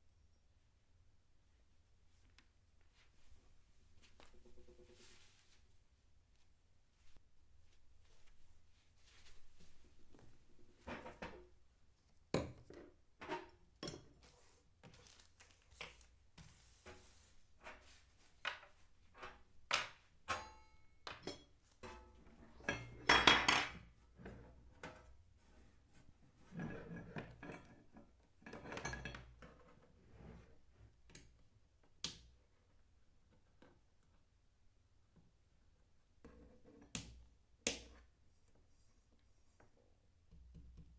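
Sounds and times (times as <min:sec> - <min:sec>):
rustling handling: 0:14.2 - 0:19.1.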